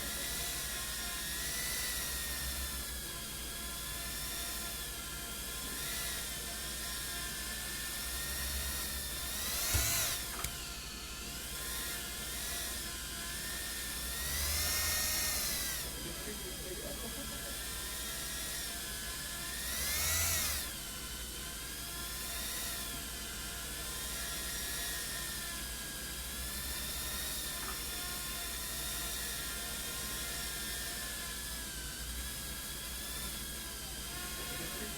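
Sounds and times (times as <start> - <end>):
drone motors whining: 0.0 - 34.9
sharp click: 9.5 - 10.6.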